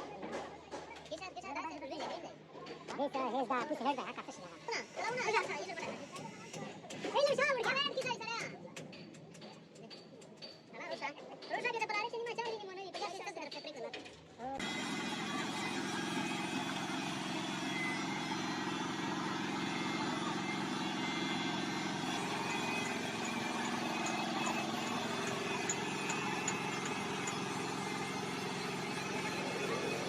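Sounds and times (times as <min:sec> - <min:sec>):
engine running: 0:14.6 - 0:30.0.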